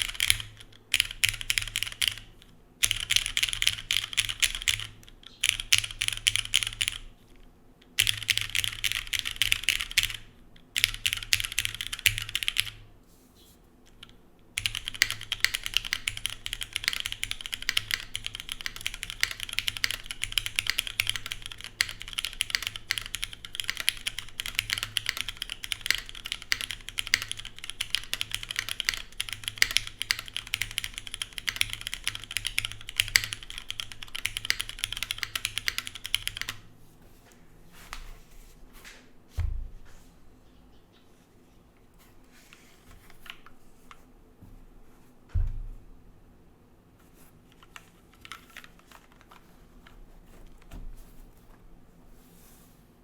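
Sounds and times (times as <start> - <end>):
mechanical keyboard key clacks: 47.6 - 50.0.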